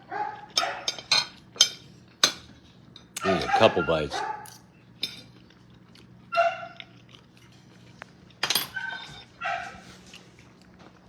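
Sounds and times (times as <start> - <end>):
dishes clinking: 0.6 - 3.6, 8.4 - 9.2
dog whining: 6.3 - 6.8, 8.7 - 9.8.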